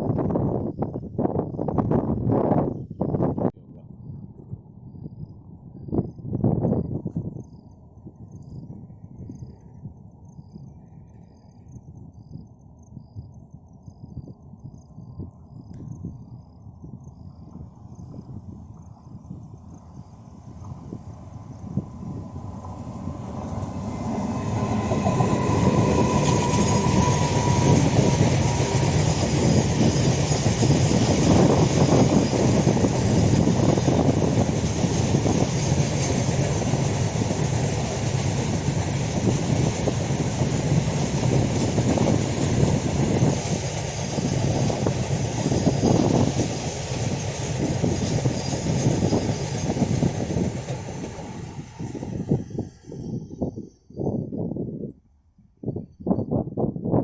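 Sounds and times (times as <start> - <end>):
train rumbling past: 17.0 - 54.2.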